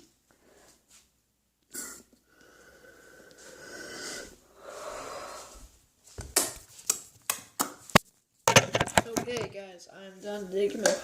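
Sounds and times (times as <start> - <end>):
breath out: 1.7 - 5.7.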